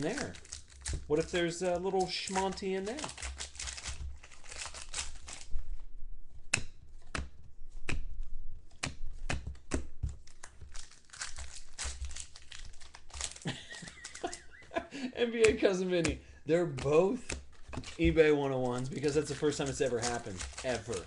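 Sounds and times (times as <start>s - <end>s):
card pack wrapper crinkling: 0.0s - 5.8s, 10.1s - 21.0s.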